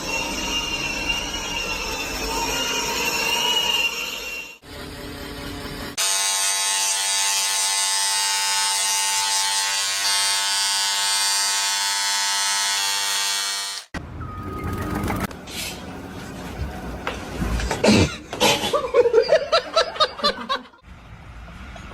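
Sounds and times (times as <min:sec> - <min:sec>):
small electric motor buzzing: 0:06.0 - 0:13.9.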